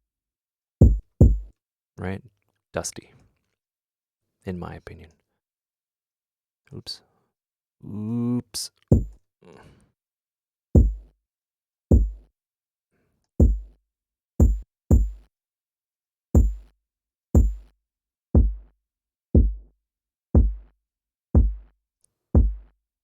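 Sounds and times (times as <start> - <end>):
distorted electronic kick drum: 0.8 - 1.5, 8.9 - 9.1, 10.8 - 11.1, 11.9 - 12.2, 13.4 - 13.7, 14.4 - 15.2, 16.4 - 16.7, 17.4 - 17.7, 18.4 - 18.7, 19.4 - 19.7, 20.4 - 20.7, 21.4 - 21.7, 22.4 - 22.7.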